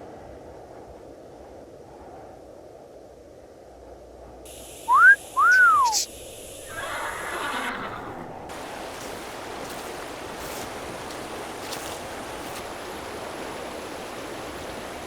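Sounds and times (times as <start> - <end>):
steady rushing nature ambience: 3.3 - 15.0.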